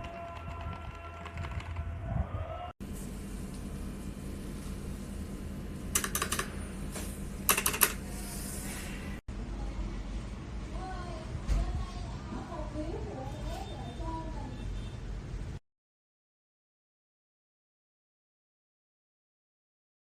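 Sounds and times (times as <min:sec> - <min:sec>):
mechanical keyboard typing: 0:00.0 - 0:01.9, 0:05.9 - 0:06.5, 0:07.5 - 0:08.0
steady low hum: 0:02.8 - 0:11.3.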